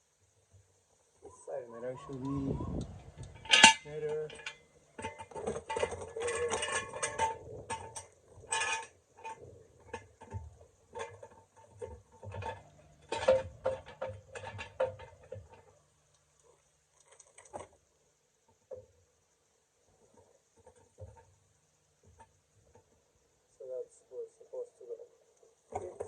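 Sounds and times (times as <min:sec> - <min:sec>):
metal tools clinking and knocking: 0:03.2 - 0:15.8.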